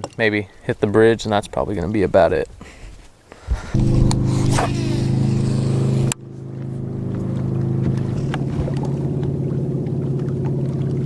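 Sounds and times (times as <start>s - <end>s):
outboard motor running: 3.8s - 11.0s.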